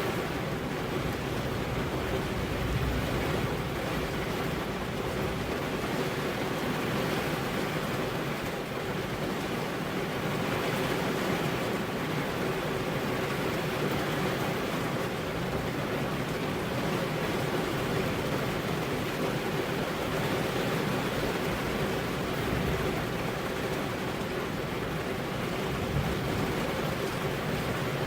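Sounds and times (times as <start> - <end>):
heavy rain on car windows: 0.0 - 28.0.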